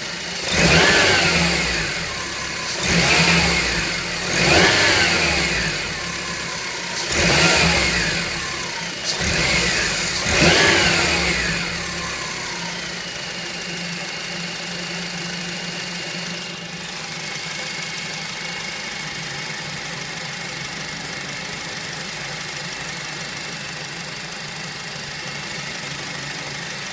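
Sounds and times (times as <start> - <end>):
car engine revving: 0.0 - 17.4
car engine idling with whine: 0.0 - 26.9.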